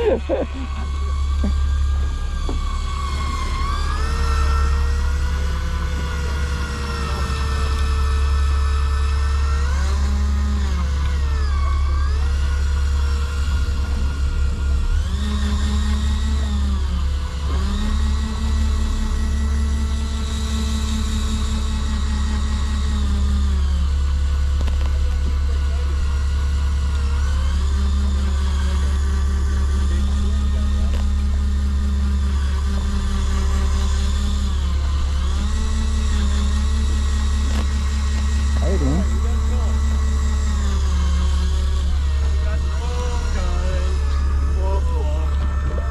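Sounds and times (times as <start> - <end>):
higher motor hum: 0.0 - 45.9
low engine drone: 0.0 - 45.9.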